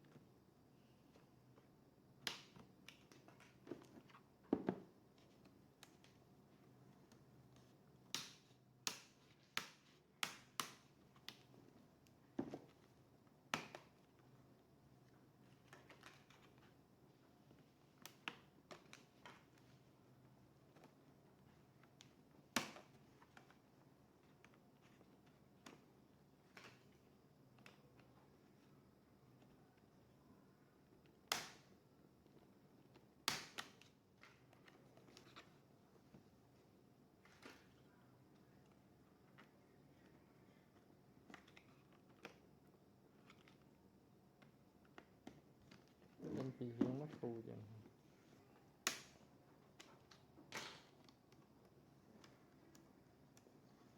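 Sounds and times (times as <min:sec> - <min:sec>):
sharp clicks of laptop parts: 0:08.1 - 0:11.5, 0:31.2 - 0:35.5, 0:48.8 - 0:53.5.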